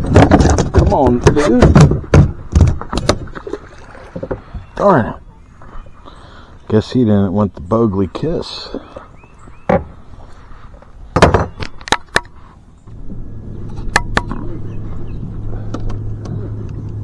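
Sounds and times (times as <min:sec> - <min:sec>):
low motor hum: 0:12.8 - 0:17.0
sharp knocks and clicks: 0:13.7 - 0:14.4.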